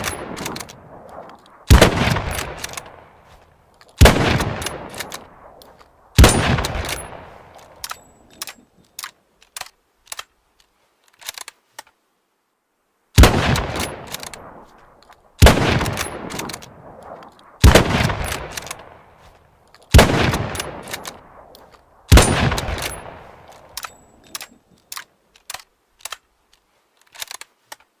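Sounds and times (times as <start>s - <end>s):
rifle shots with echo: 0.0s - 3.4s, 4.0s - 8.0s, 13.2s - 19.2s, 19.9s - 24.4s.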